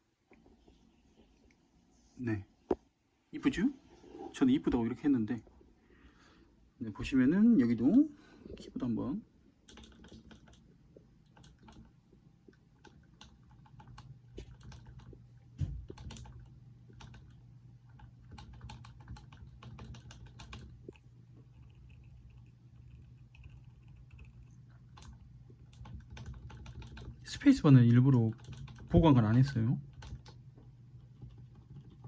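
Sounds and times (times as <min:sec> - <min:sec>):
soft keyboard key clicks: 0:09.7 - 0:10.6, 0:11.3 - 0:11.9.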